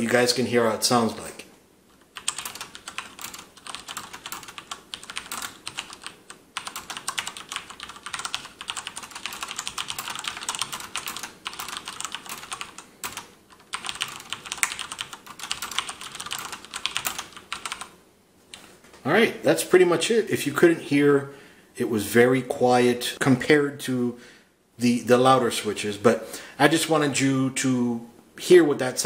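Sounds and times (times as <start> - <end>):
fast typing on mechanical keyboard: 2.0 - 17.9.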